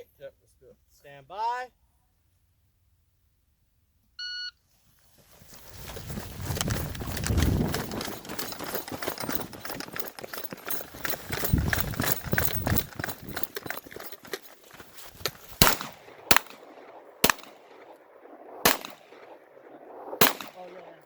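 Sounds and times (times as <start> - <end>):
horse hooves beating on ground: 5.2 - 17.9.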